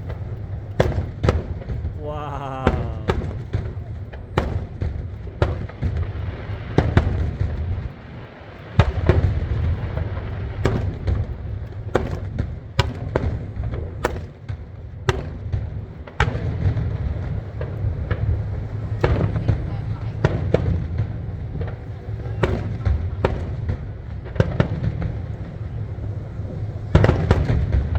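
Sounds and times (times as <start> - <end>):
fireworks bangs: 0.0 - 7.9, 20.2 - 27.9.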